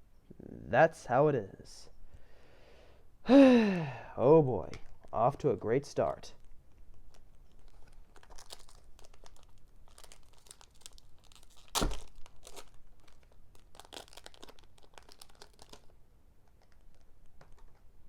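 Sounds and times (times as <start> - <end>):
foil wrapper crinkling and tearing: 6.0 - 17.8.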